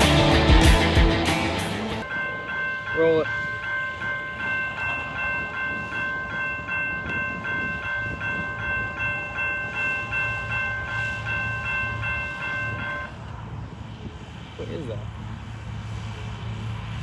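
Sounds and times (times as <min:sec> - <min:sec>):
crossing bell ringing: 0:00.0 - 0:13.6
train rumbling past: 0:00.0 - 0:17.0.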